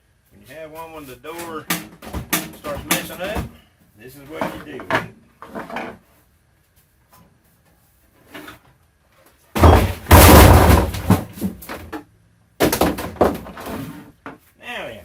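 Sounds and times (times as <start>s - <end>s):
metal oven crashing and rattling: 9.6s - 11.6s.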